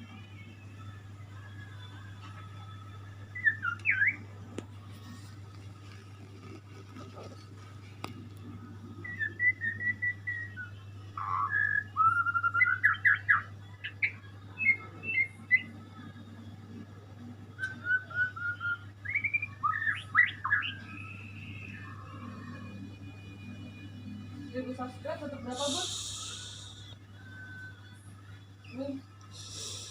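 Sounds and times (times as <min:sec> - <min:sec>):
low steady hum: 0:00.0 - 0:29.9
songbird singing: 0:03.3 - 0:04.2, 0:08.9 - 0:16.0, 0:17.6 - 0:22.8.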